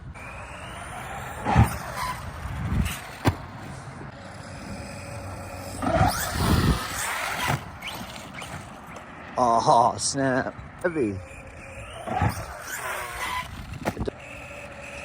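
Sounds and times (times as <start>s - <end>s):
electric motor whining: 0.0s - 15.0s
toy truck landing thuds: 0.7s - 3.8s, 5.7s - 9.1s, 11.5s - 14.9s.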